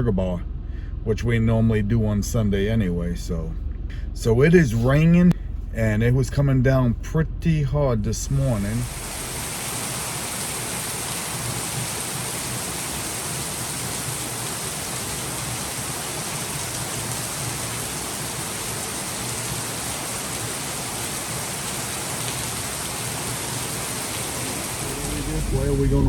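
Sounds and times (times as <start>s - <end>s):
engine and road noise hum: 0.0s - 26.0s
rain falling on a car: 8.6s - 26.0s.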